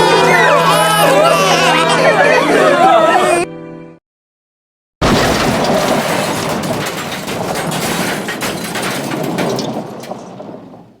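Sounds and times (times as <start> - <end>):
clattering debris: 5.0 - 11.0
loud breaking and shattering: 5.0 - 11.0.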